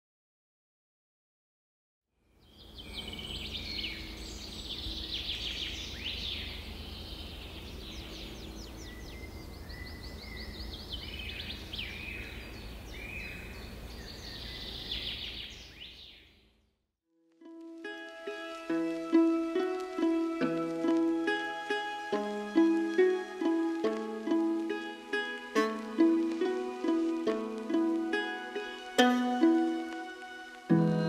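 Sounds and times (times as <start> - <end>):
birds singing and calling: 2.4 - 16.4.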